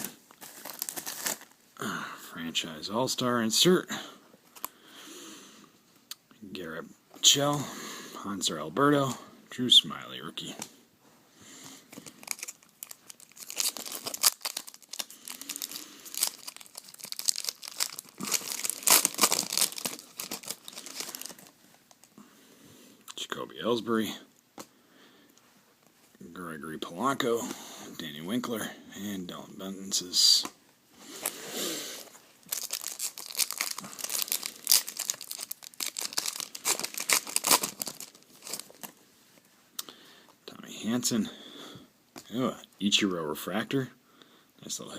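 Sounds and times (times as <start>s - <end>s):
foil wrapper tearing and crinkling: 0.0s - 1.6s, 12.2s - 22.0s, 32.4s - 38.9s.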